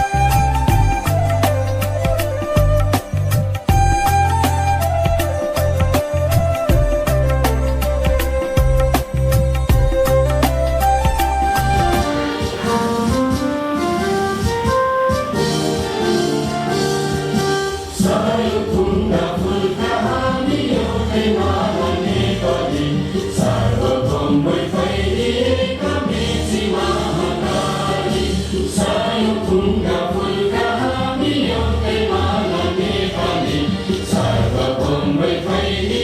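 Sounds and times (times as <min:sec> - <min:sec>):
group of voices singing: 0:15.4 - 0:36.0.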